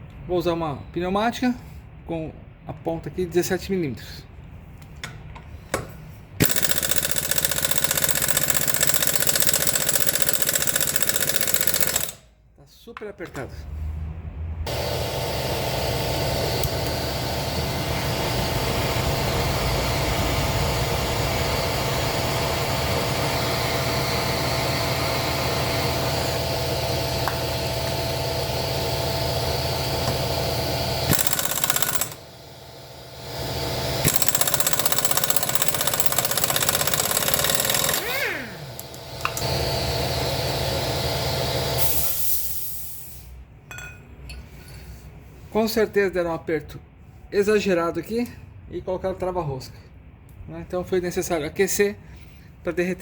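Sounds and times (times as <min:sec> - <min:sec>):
pneumatic impact wrench hammering: 0:05.7 - 0:12.3, 0:27.2 - 0:28.2, 0:29.9 - 0:32.5, 0:33.2 - 0:39.6, 0:41.8 - 0:43.3.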